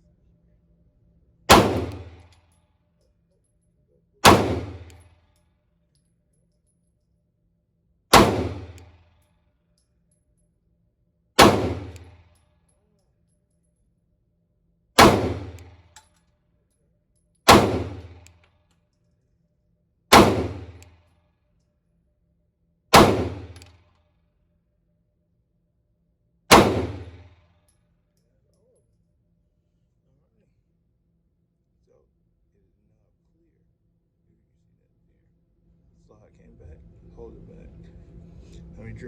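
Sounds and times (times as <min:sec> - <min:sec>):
pistol shots: 0:01.5 - 0:02.4, 0:04.2 - 0:05.0, 0:08.1 - 0:09.0, 0:11.4 - 0:12.2, 0:15.0 - 0:15.8, 0:17.5 - 0:18.3, 0:20.1 - 0:20.8, 0:22.9 - 0:23.7, 0:26.5 - 0:27.4.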